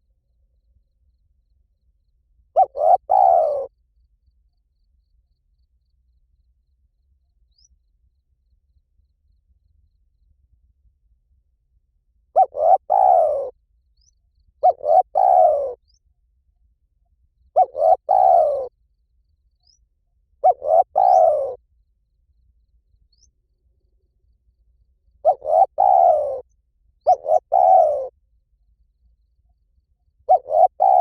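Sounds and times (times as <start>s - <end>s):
dove cooing: 2.6s - 3.7s, 12.4s - 13.6s, 14.6s - 15.8s, 17.6s - 18.8s, 20.4s - 21.6s, 25.2s - 28.2s, 30.3s - 31.0s
small birds chirping: 2.6s - 3.7s, 12.4s - 16.1s, 17.4s - 21.6s, 22.3s - 28.1s, 29.1s - 31.0s.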